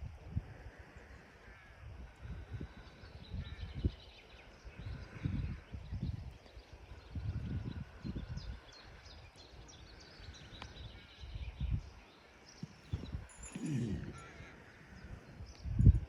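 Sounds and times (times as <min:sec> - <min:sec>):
birds chirping faintly: 0:00.5 - 0:16.0
horse rolling on ground: 0:12.6 - 0:14.6.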